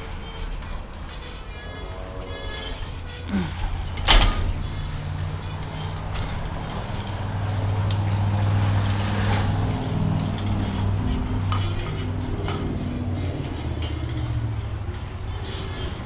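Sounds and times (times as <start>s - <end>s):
engine running: 0.0s - 16.0s.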